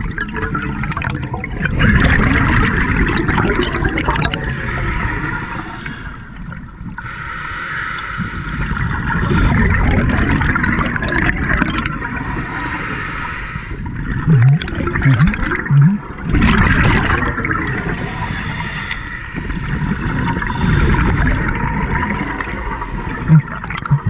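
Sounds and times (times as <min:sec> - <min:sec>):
regulator bubbles gurgling: 0:00.0 - 0:07.2, 0:08.2 - 0:24.0
hiss of inhaled air: 0:04.4 - 0:06.3, 0:07.0 - 0:09.6, 0:12.1 - 0:13.9, 0:18.0 - 0:19.8.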